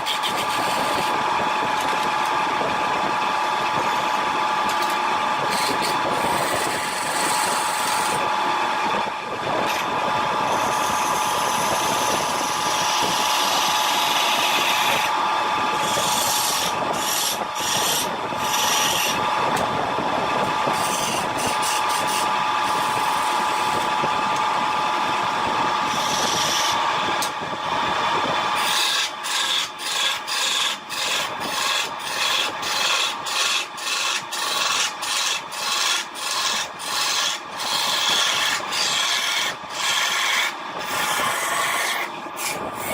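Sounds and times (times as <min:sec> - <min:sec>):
wood lathe motor whine: 0:00.0 - 0:42.9
spinning wood scraped: 0:03.9 - 0:08.2, 0:15.8 - 0:19.2, 0:20.7 - 0:23.9, 0:25.8 - 0:26.8, 0:28.5 - 0:42.9.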